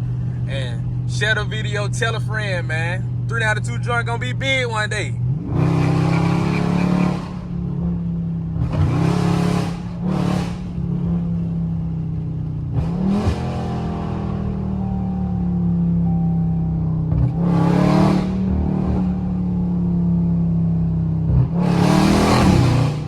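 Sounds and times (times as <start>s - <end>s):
car engine revving: 0.0s - 23.0s.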